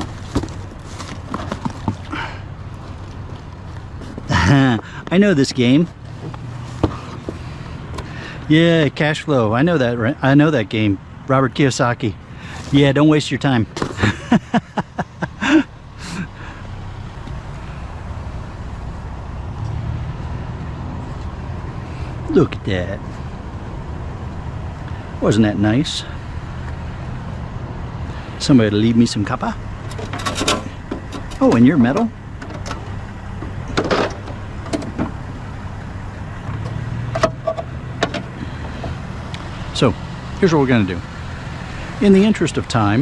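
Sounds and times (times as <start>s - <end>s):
scrap scraping: 0.0s - 4.5s
road noise: 0.0s - 43.0s
vehicle engine rumble: 0.0s - 43.0s
scrap metal knocks: 29.8s - 35.2s, 36.5s - 39.0s.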